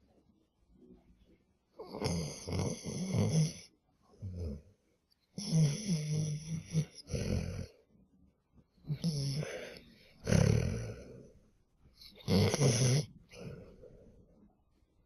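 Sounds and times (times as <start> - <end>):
dog snoring: 1.8 - 4.6, 5.4 - 7.8, 8.9 - 11.3, 12.0 - 13.8.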